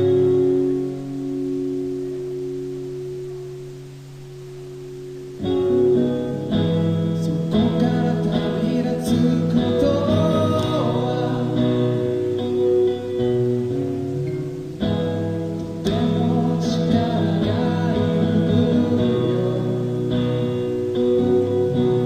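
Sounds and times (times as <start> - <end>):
guitar chords strummed: 0.0 - 22.0
person singing: 6.9 - 13.2, 15.6 - 22.0.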